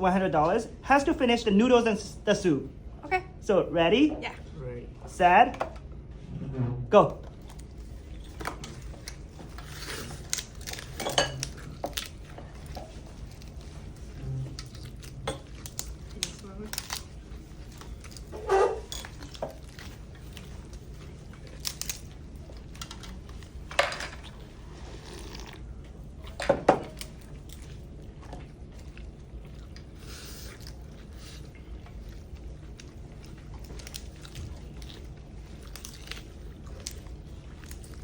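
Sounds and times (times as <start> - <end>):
steady low hum: 0.0 - 38.0
people chewing and biting: 7.2 - 38.0
utensils clinking against bowls: 10.7 - 12.0.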